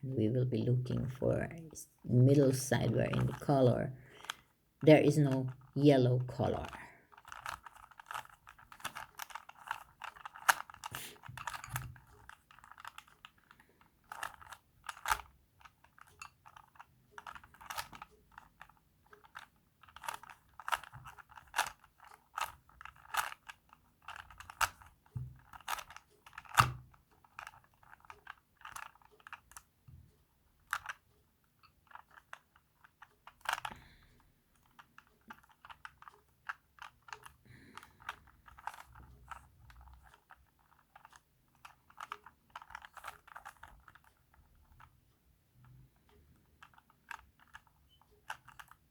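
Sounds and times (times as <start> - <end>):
rubik's cube clicking: 0.9 - 48.9.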